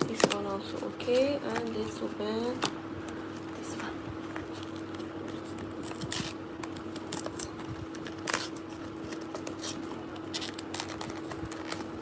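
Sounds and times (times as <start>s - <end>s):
faint steady hum: 0.0s - 12.0s
packaging clicks and rustles: 4.3s - 12.0s.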